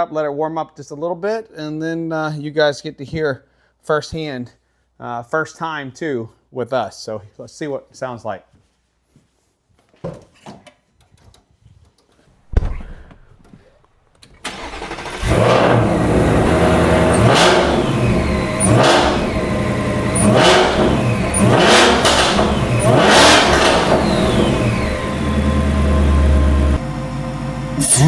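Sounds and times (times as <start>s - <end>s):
thump: 12.5s - 13.3s
car engine revving: 14.5s - 28.0s
supercharger whine: 14.5s - 28.0s.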